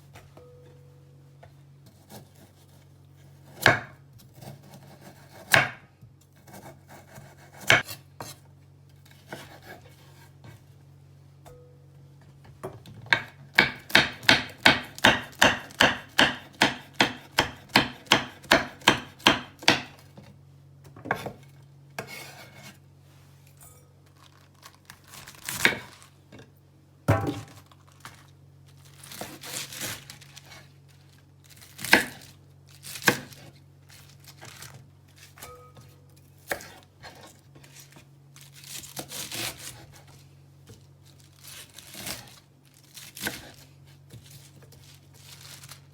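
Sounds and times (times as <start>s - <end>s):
knife chopping on cutting board: 3.4s - 8.4s, 9.3s - 9.9s, 13.1s - 20.1s, 25.5s - 25.9s, 27.1s - 27.6s, 31.8s - 32.2s, 36.5s - 37.3s.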